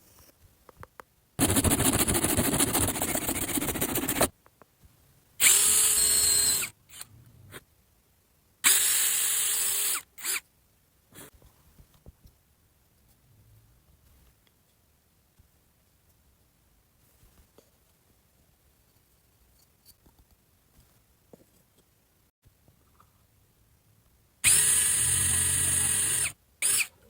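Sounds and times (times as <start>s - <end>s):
power tool running: 5.4s - 7.0s, 24.4s - 26.9s.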